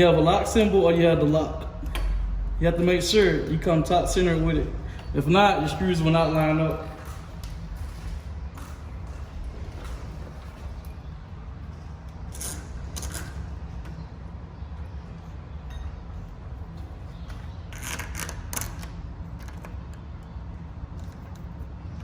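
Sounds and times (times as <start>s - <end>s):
low background rumble: 0.0s - 22.0s
metal parts clicking and scraping: 12.3s - 14.0s.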